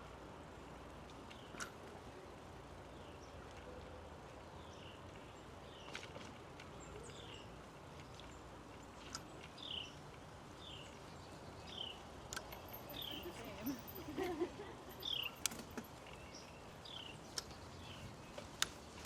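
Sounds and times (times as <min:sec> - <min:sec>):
steady background hiss: 0:00.0 - 0:19.0
bird chirping: 0:09.6 - 0:10.0, 0:10.6 - 0:19.0.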